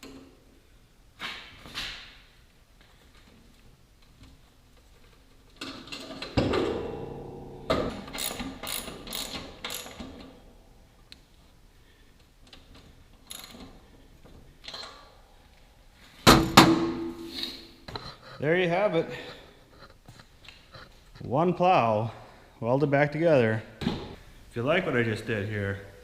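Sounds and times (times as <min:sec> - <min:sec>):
metal clanks: 0:05.8 - 0:10.4
ratchet clicks: 0:08.1 - 0:10.2.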